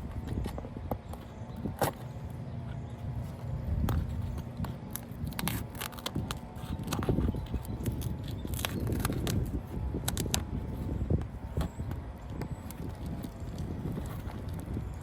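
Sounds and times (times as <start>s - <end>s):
low steady rumble: 0.0s - 15.0s.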